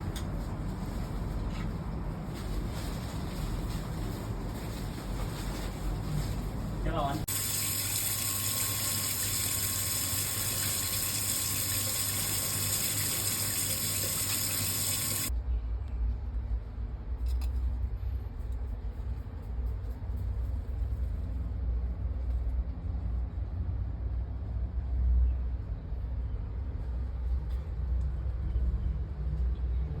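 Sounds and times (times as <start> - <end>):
tap water gushing: 7.3 - 15.3.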